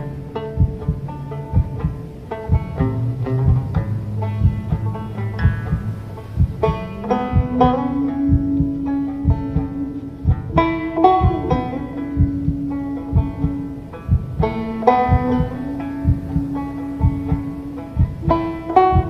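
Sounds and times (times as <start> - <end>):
banjo plucked notes: 0.0 - 19.0
held low banjo note: 0.0 - 19.0.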